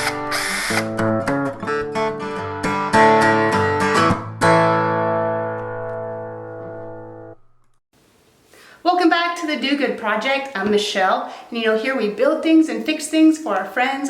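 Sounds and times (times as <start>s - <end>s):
strummed acoustic guitar chords: 0.0s - 7.4s.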